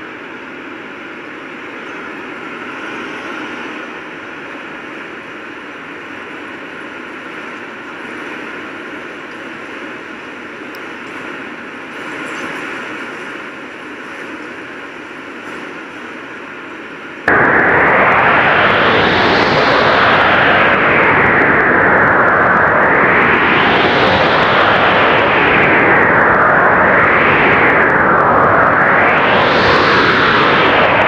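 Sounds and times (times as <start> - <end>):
strong blizzard wind gusting: 0.0 - 31.0.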